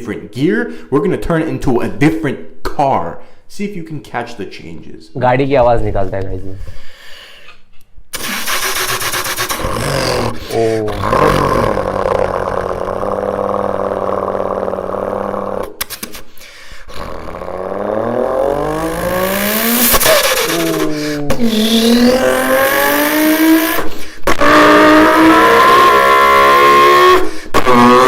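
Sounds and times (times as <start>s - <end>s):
man imitating revving car engines: 8.2s - 15.8s, 16.8s - 28.0s.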